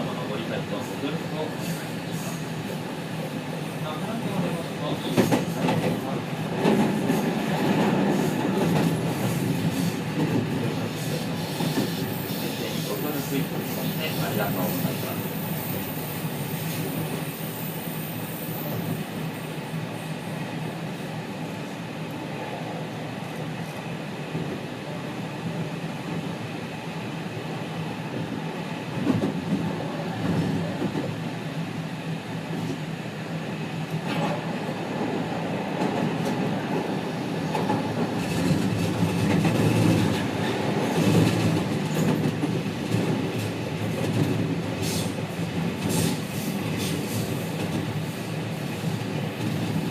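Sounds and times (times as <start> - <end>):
train car rumble: 0.0 - 49.9.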